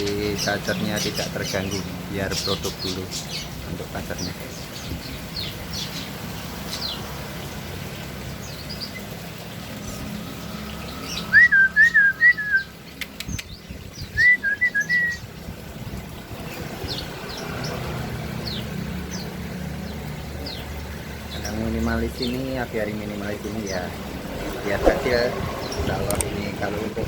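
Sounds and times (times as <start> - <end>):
songbird warbling whistle: 11.3 - 12.7, 14.1 - 15.2.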